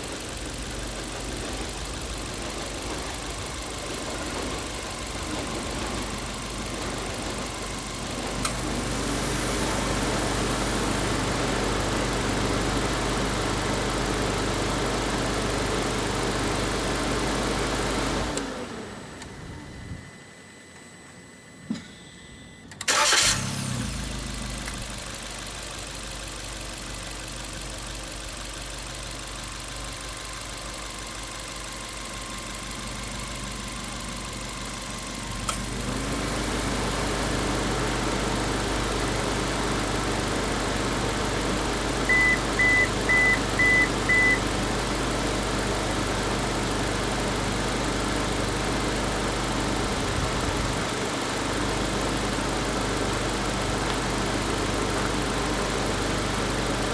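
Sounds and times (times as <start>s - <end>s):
car engine starting and idling: 0.0s - 20.4s, 22.7s - 56.9s
quick electronic beeps: 42.1s - 44.4s.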